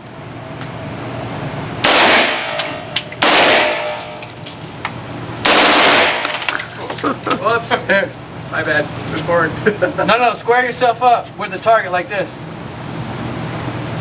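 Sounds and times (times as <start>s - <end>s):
gunfire echo: 1.8s - 4.2s, 5.4s - 6.5s
machine gun bursts: 5.4s - 6.5s.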